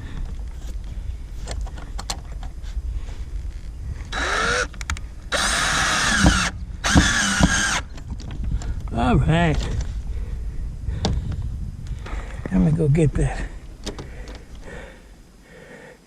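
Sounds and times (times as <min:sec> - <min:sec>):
power drill spinning: 0:04.1 - 0:08.0.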